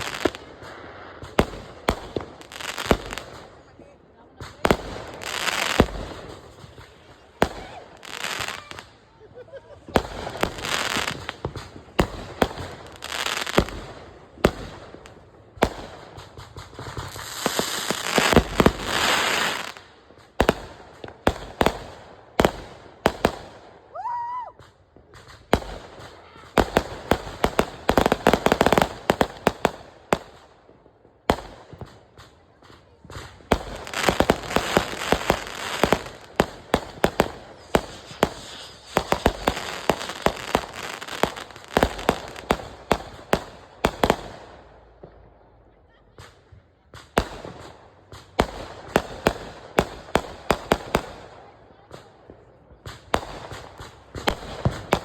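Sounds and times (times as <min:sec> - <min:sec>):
fireworks bangs and pops: 0:00.0 - 0:55.0
fireworks crackling: 0:00.0 - 0:55.0
whistling firework: 0:04.6 - 0:14.6, 0:23.2 - 0:24.8, 0:33.4 - 0:42.6.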